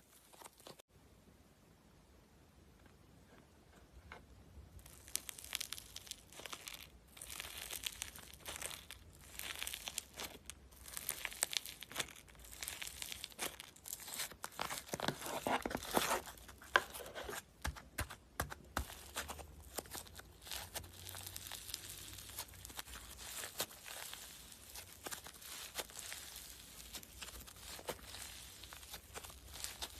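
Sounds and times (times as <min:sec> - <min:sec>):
slime squished by hand: 0:04.8 - 0:16.3, 0:17.7 - 0:29.9.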